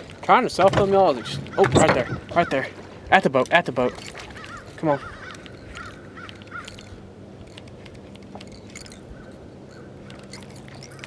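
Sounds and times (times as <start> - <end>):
birds chirping: 0.4 - 3.1.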